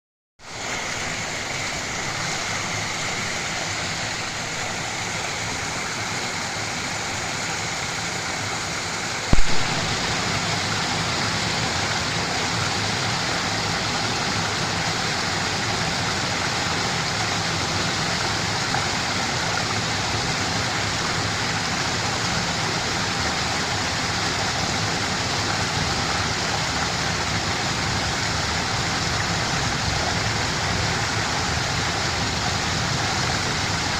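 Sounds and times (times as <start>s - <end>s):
small river rushing: 0.4s - 33.9s
brief thump: 9.3s - 9.9s.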